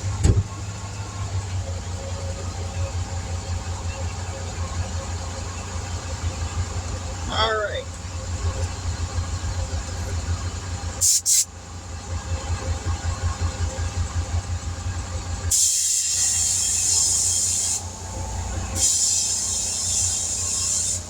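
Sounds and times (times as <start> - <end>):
engine idling: 0.0 - 21.0
compressed air hissing: 11.0 - 11.4, 15.5 - 21.0.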